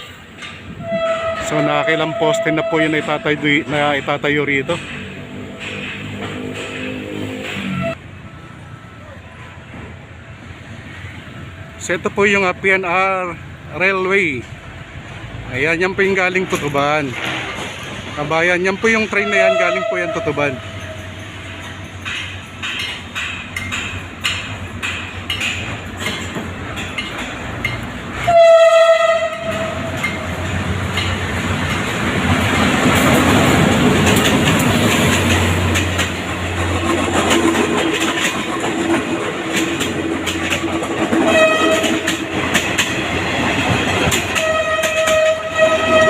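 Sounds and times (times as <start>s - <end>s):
train rumble and wheel clatter: 0.0s - 46.0s
train horn blasts: 0.8s - 3.8s, 6.5s - 8.0s, 19.1s - 21.2s, 28.2s - 30.4s, 41.2s - 42.3s, 44.3s - 46.0s.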